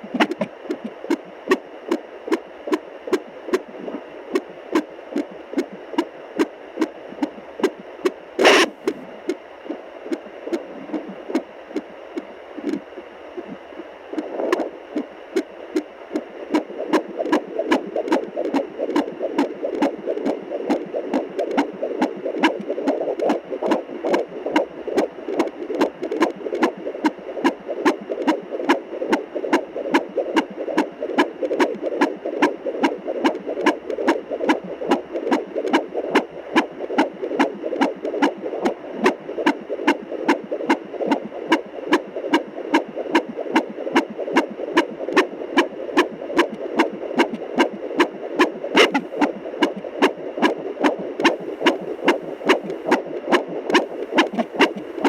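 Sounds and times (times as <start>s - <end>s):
fetal heartbeat on doppler: 0.0s - 55.0s
steady hum: 0.0s - 55.0s.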